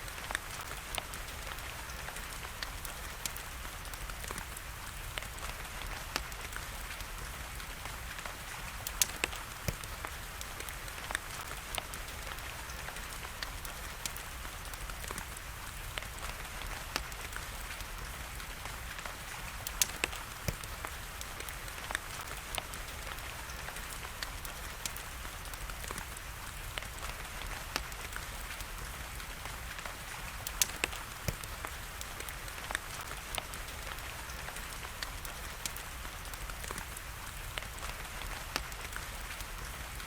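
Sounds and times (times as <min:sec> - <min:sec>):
rain falling: 0:00.0 - 0:40.0
wood fire crackling and popping: 0:00.0 - 0:40.0.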